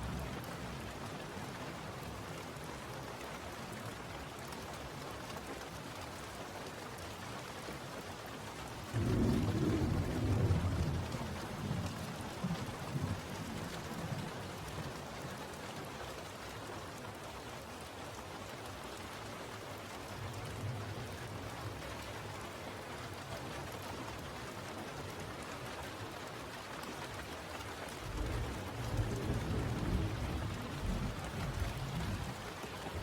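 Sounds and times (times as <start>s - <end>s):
steady rain falling: 0.0s - 33.0s
low rumble of thunder: 8.9s - 15.0s, 27.9s - 33.0s.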